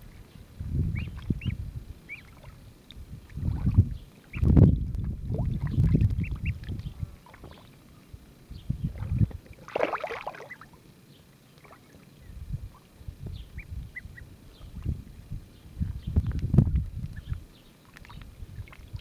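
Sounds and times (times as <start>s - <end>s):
ducklings peeping: 0.0s - 2.6s, 3.2s - 9.4s, 10.3s - 19.0s
ducklings splashing in water: 0.9s - 7.9s, 8.8s - 10.8s, 11.5s - 12.1s, 16.2s - 19.0s.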